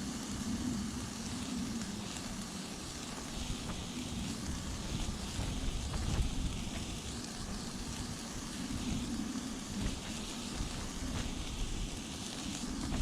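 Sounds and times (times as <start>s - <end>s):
light rain ticking: 0.0s - 13.0s
wind gusting against tent: 0.0s - 13.0s.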